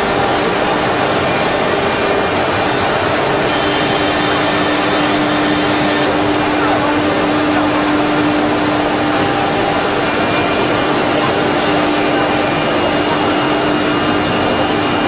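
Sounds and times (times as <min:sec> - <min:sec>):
engraving machine spindle running: 0:00.0 - 0:15.0.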